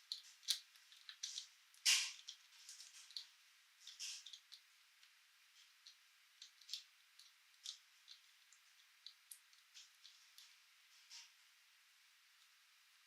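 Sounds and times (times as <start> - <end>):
plastic toy parts clicking: 0.1 - 3.2.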